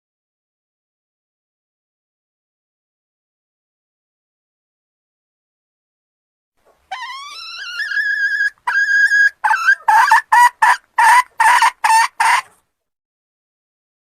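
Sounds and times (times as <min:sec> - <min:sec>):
hen cackling and clucking: 0:06.7 - 0:12.6.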